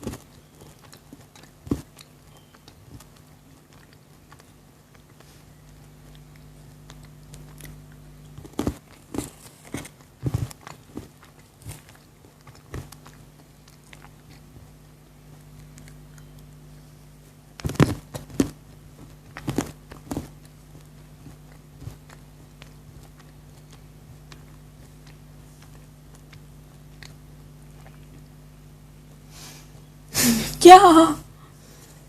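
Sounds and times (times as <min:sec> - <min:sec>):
chocolate crunching and chewing: 0:00.0 - 0:30.0.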